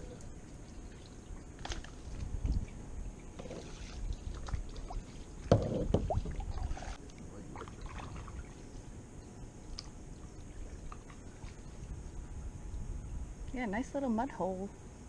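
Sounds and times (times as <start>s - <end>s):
water splashing and gurgling: 0.0s - 8.8s
moving water: 0.0s - 12.5s
low rumble of wind: 0.0s - 15.0s.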